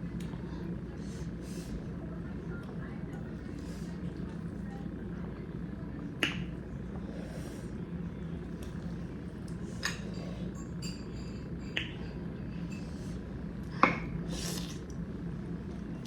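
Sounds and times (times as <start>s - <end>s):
dishes and tableware clinking: 9.9s - 12.0s.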